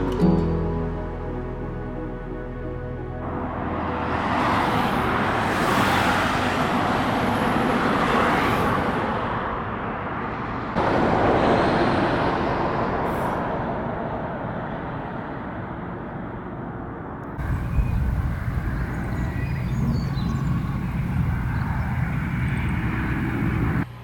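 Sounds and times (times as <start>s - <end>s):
vehicles passing by: 1.2s - 24.0s.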